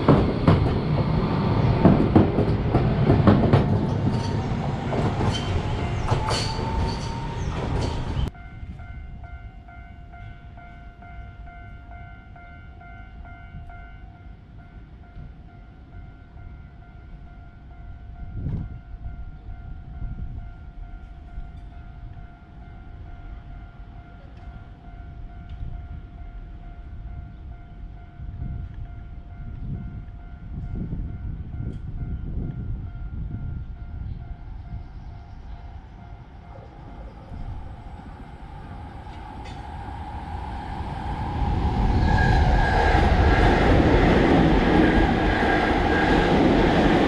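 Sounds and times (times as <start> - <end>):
train rumbling past: 0.0 - 13.8, 16.7 - 47.0
railroad crossing alarm ringing: 0.0 - 47.0.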